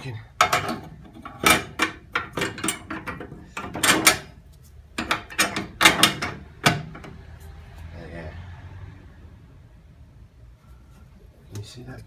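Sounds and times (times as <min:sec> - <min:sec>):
sheet metal clattering and scraping: 0:00.4 - 0:04.4, 0:05.0 - 0:07.2.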